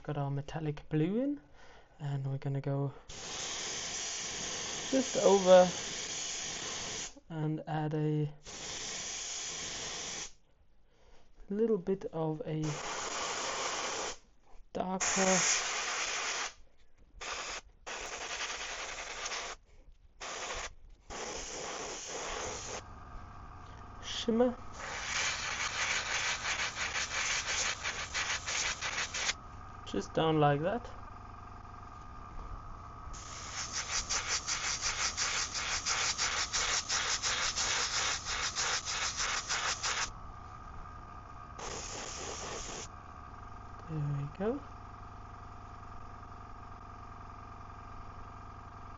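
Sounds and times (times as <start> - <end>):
airbrush hissing spray: 3.1 - 7.2, 8.4 - 10.4, 12.6 - 14.2, 15.0 - 16.6, 17.2 - 19.6, 20.2 - 22.8, 24.1 - 29.4, 33.1 - 40.1, 41.6 - 42.9
steady low hum: 16.8 - 48.9.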